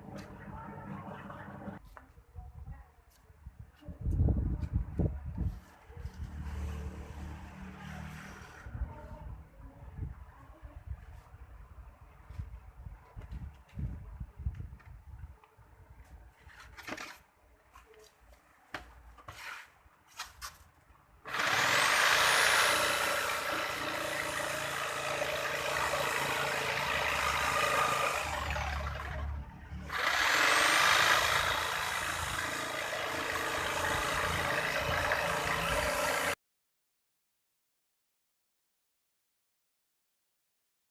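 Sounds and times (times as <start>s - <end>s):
power tool motor cutting: 21.3s - 36.4s.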